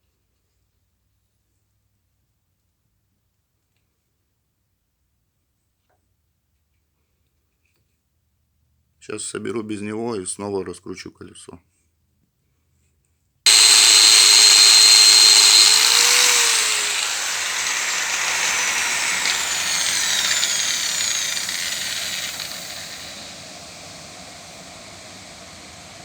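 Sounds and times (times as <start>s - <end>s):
wheel coasting with falling tones: 13.5s - 25.4s
angle grinder spinning: 13.5s - 26.0s.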